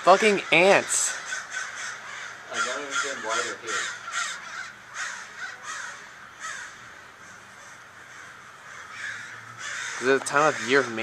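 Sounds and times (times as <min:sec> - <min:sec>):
crows cawing: 0:00.0 - 0:11.0.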